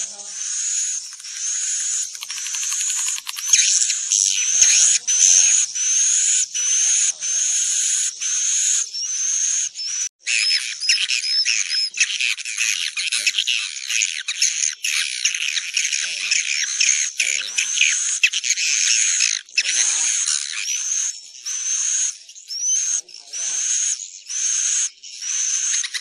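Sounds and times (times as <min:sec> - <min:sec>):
rising bird chirp: 0:00.0 - 0:12.0
overlapping bird twittering: 0:00.0 - 0:26.0.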